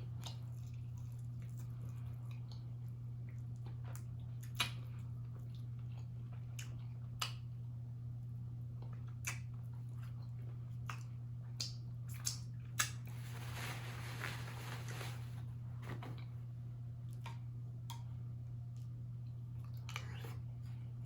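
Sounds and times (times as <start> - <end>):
low electrical hum: 0.0 - 21.0
person chewing food: 3.3 - 7.5.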